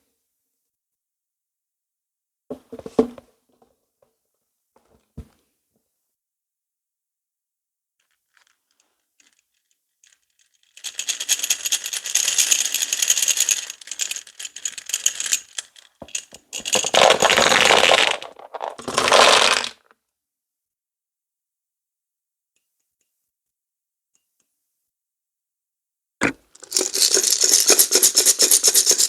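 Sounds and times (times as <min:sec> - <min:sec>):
hard candies rattling when poured: 0:10.1 - 0:19.8, 0:26.6 - 0:29.0.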